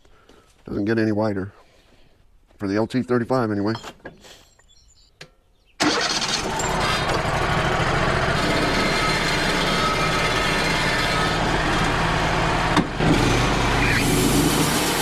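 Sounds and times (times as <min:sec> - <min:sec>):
band sawmill sawing log: 0:06.4 - 0:15.0.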